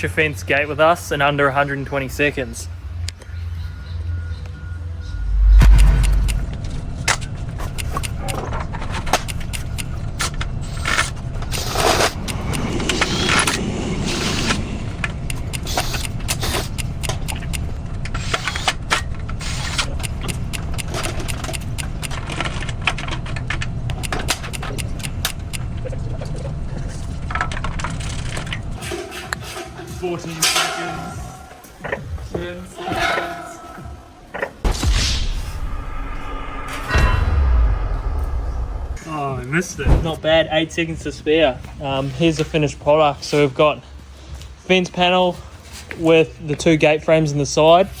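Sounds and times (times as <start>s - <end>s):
steady low rumble: 4.9s - 28.8s, 33.8s - 40.2s
metal parts clicking and knocking: 15.0s - 31.2s.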